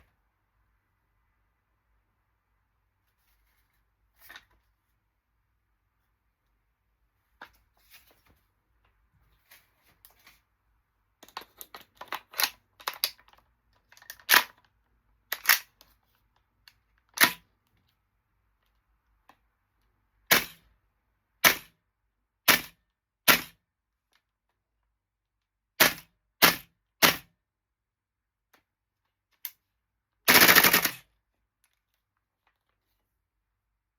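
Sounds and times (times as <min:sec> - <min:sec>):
airsoft rifle shots: 0:22.5 - 0:23.6, 0:25.8 - 0:27.3, 0:30.3 - 0:31.0
rapid string of shots: 0:30.3 - 0:31.0.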